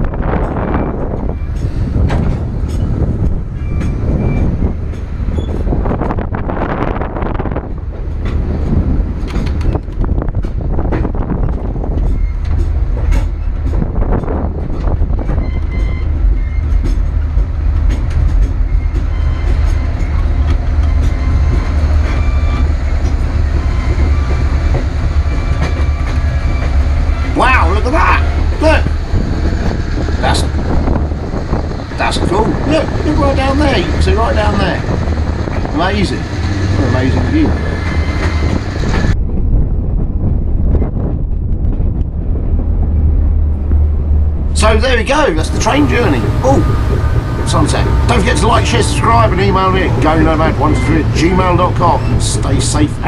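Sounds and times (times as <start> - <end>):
train low rumble: 0.0 - 53.0
wheels clicking over rails: 7.9 - 39.2.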